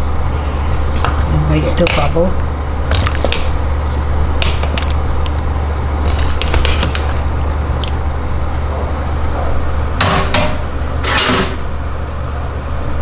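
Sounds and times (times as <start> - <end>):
steady low hum: 0.0 - 13.0
kitchen utensils clattering: 10.0 - 11.8.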